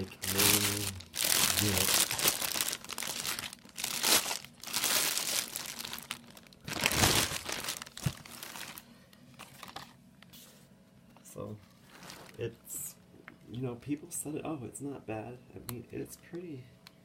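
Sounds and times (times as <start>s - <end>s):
plastic packaging crinkling: 0.0s - 10.0s, 11.8s - 12.5s.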